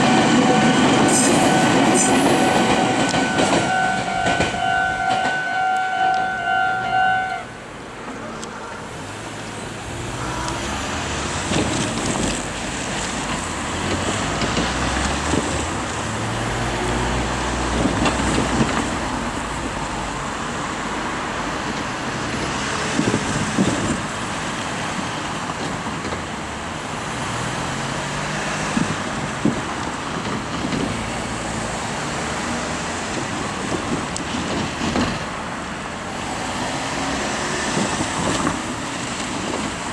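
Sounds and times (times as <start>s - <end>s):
level-crossing warning bell: 0.0s - 7.4s
cars passing: 0.0s - 39.9s.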